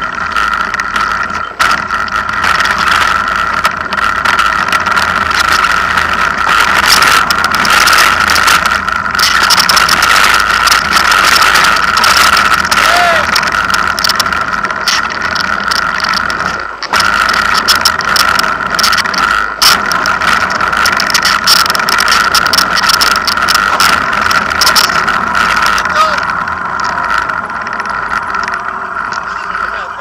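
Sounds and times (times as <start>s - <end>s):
car engine running: 0.0s - 30.0s
people talking: 12.8s - 13.3s, 25.8s - 26.2s, 29.2s - 30.0s.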